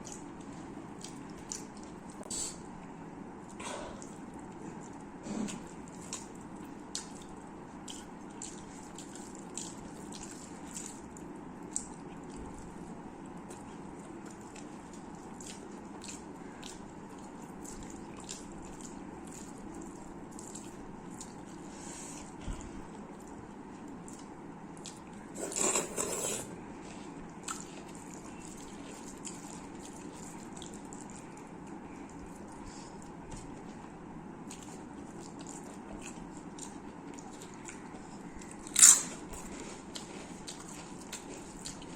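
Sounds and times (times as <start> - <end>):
low background hum: 0.0 - 41.9
person chewing food: 0.0 - 41.9
crunchy eating burst: 38.5 - 39.6.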